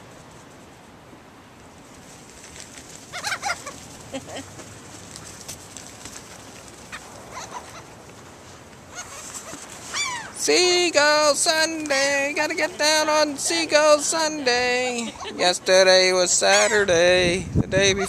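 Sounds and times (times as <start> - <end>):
gulls squawking: 3.1 - 4.6, 6.8 - 8.0, 8.9 - 15.6, 16.4 - 17.0.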